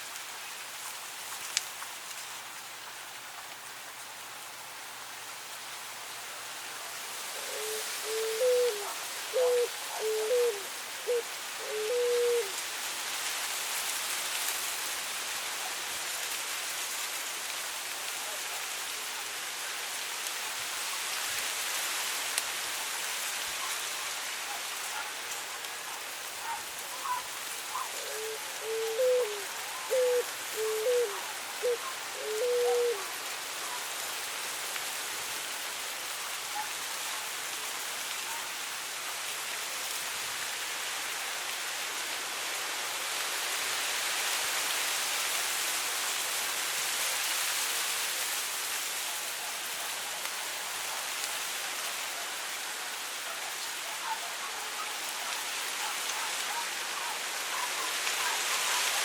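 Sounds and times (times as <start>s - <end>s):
wind through dry grass: 0.0s - 59.0s
dove cooing: 7.4s - 12.6s, 26.4s - 33.1s.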